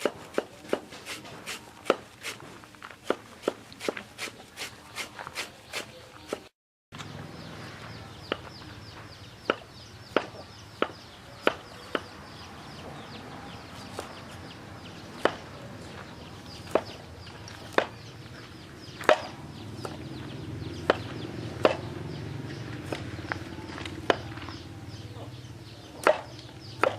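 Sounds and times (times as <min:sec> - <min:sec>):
sharp knocks: 0:20.8 - 0:21.9.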